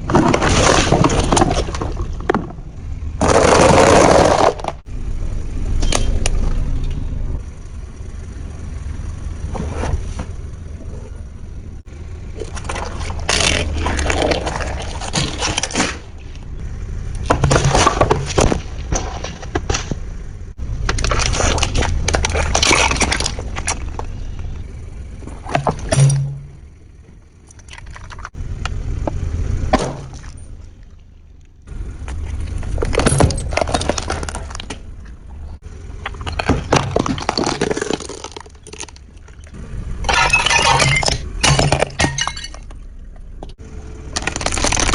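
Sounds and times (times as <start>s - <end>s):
low rumble: 0.0s - 44.9s
brittle objects crunching: 12.4s - 16.4s, 36.1s - 40.8s, 44.1s - 44.9s.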